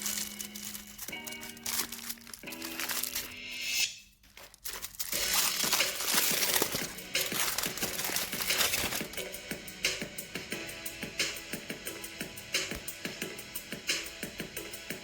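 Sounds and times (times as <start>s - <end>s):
wrapper crinkling: 0.0s - 9.3s.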